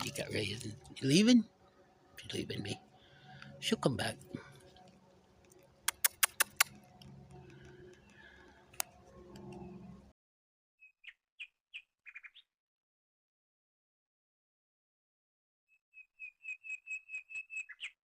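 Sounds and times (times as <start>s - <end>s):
low steady hum: 0.0s - 10.1s
sharp clicks: 4.8s - 9.6s
bird chirps: 10.8s - 12.5s, 15.7s - 18.0s.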